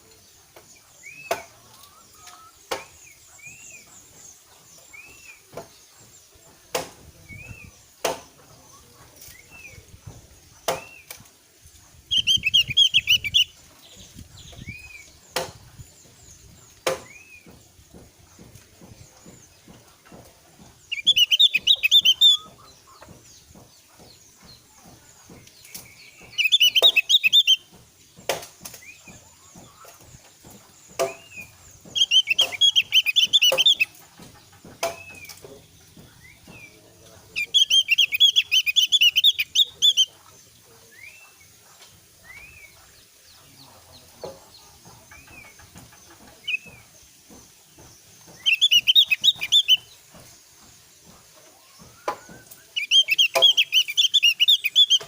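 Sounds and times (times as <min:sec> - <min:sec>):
bird chattering song: 0:00.0 - 0:55.0
bird call notes: 0:12.1 - 0:13.6, 0:20.8 - 0:23.0, 0:25.6 - 0:27.7, 0:31.0 - 0:34.0, 0:36.2 - 0:40.2, 0:48.2 - 0:50.0, 0:51.6 - 0:55.0.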